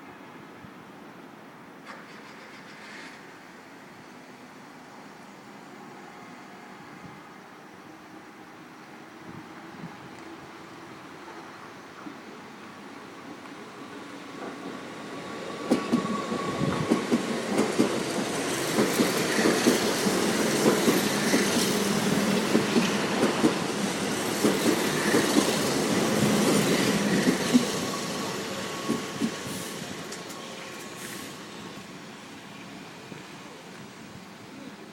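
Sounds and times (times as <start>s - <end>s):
train wheels clacking on rails: 13.2s - 31.5s.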